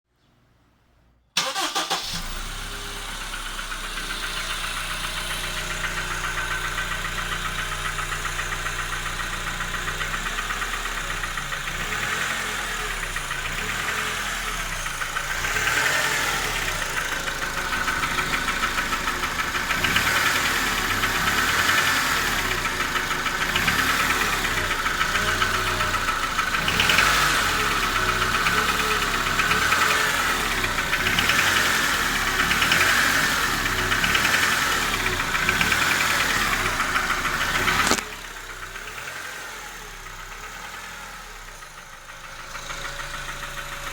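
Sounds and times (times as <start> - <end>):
car engine starting and running: 1.4 - 43.9
rapid engine knocking: 3.5 - 43.9.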